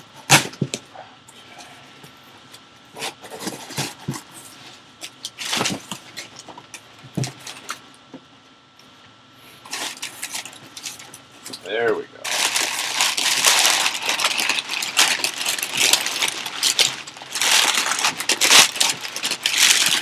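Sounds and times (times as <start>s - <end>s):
cardboard packaging rustling: 2.9s - 7.8s, 9.6s - 11.6s, 12.2s - 20.0s.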